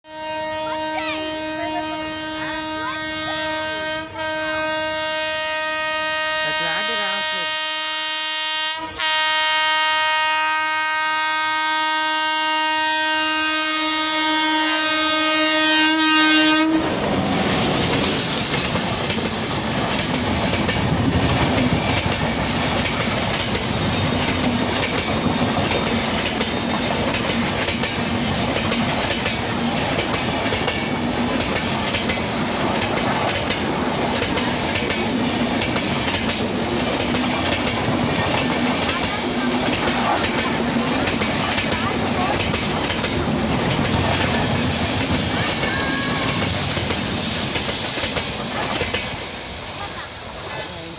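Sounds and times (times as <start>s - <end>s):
locomotive horn blast: 0.0s - 21.7s, 43.4s - 50.9s
train coaches rushing and clacking: 0.1s - 50.9s.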